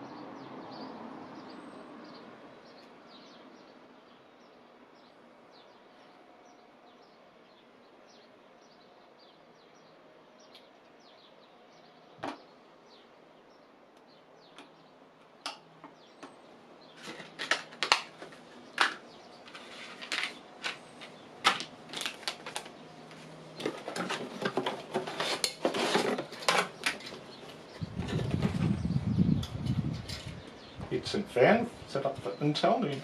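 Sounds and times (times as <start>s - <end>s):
scraping and rustling: 16.9s - 28.8s.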